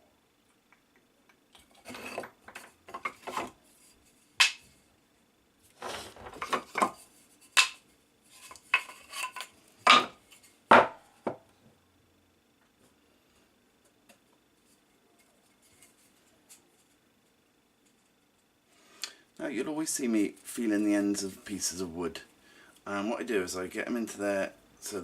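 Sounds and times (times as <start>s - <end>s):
wooden pieces knocking and clattering: 1.5s - 3.6s, 4.4s - 4.6s, 5.8s - 7.8s, 8.4s - 11.0s.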